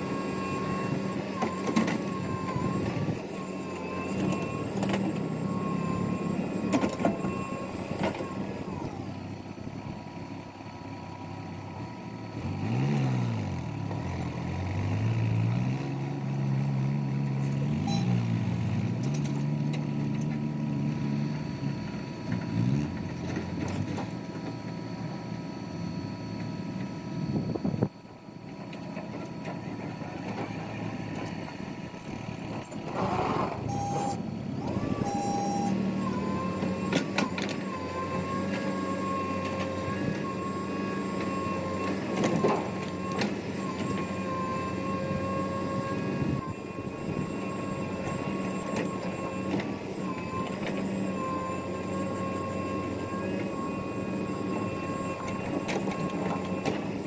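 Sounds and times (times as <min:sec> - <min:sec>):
heavy diesel engines running: 0:00.0 - 0:57.0
short beeps: 0:17.8 - 0:18.3, 0:33.6 - 0:34.3, 0:34.9 - 0:37.0.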